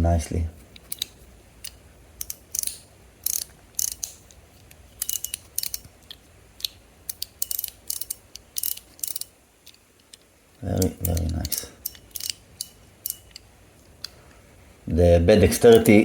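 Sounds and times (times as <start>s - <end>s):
metallic clicks of fidget toy: 0.8s - 10.2s, 10.8s - 14.2s.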